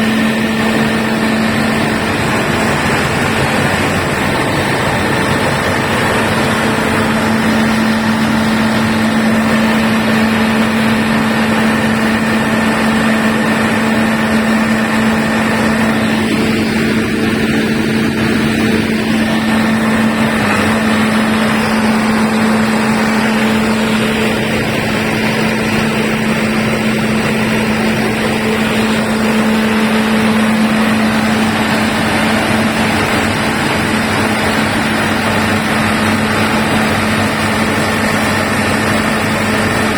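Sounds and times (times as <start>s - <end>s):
diesel generator running: 0.0s - 39.9s.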